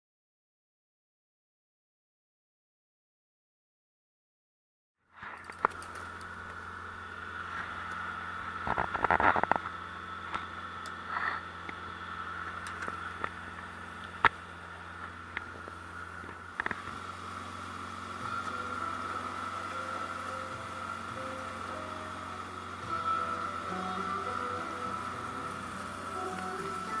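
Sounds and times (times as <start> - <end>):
boat engine drone: 5.1 - 27.0.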